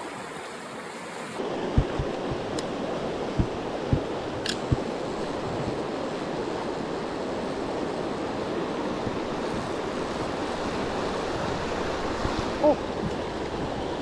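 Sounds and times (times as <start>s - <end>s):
stream rushing: 0.0s - 14.0s.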